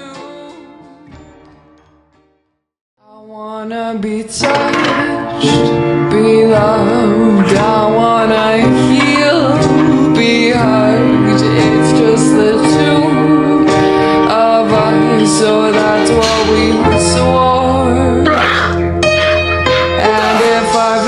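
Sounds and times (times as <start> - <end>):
person singing with reverb: 0.0 - 0.9, 3.0 - 18.9, 19.8 - 21.0
plucked strings: 4.4 - 21.0.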